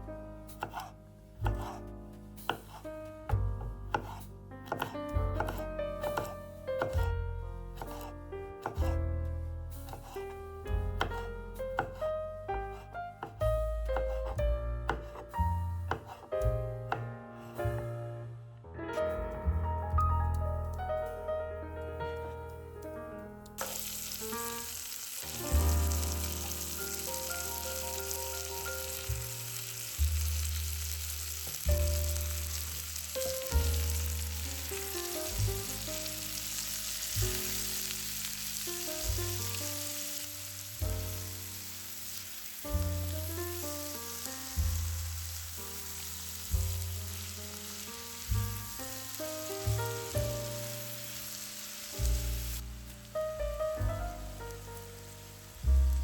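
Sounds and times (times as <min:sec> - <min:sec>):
piano and bass music: 0:00.0 - 0:56.0
food sizzling in a skillet: 0:02.4 - 0:02.8, 0:23.6 - 0:53.3, 0:54.2 - 0:56.0.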